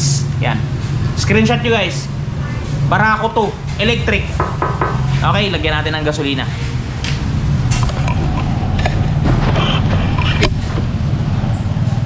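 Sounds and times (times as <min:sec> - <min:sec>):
low engine hum: 0:00.0 - 0:12.0.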